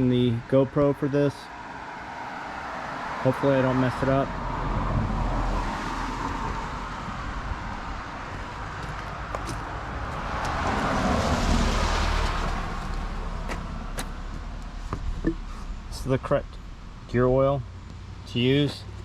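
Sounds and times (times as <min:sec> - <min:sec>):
steady traffic rumble: 0:00.0 - 0:19.0
vehicle passing by: 0:01.6 - 0:19.0.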